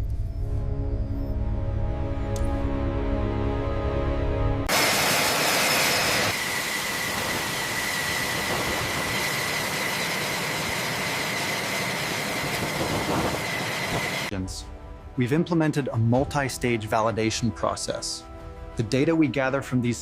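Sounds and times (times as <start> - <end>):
jet engine roar and whine: 4.7 - 14.3.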